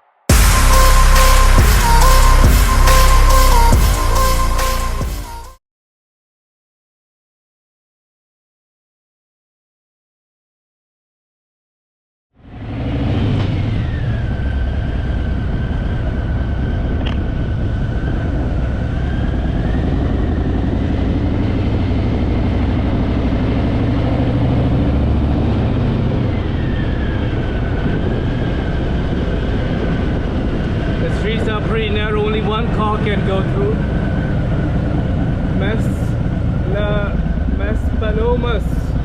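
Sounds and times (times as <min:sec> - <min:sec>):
wind and road noise: 0:12.4 - 0:39.0.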